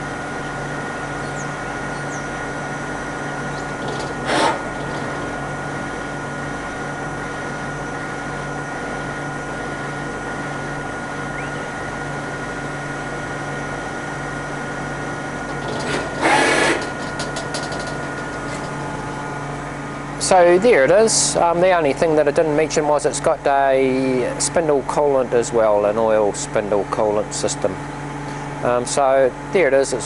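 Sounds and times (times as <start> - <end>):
machine hum with whine: 0.0 - 30.0
machine clicks: 3.6 - 5.3, 15.5 - 18.8
loud burst of noise: 3.7 - 6.0, 15.5 - 17.8.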